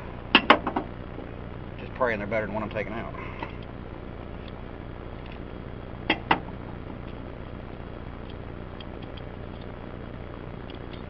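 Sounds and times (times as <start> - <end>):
steady low hum: 0.0 - 11.0
sharp clicks: 8.2 - 9.8.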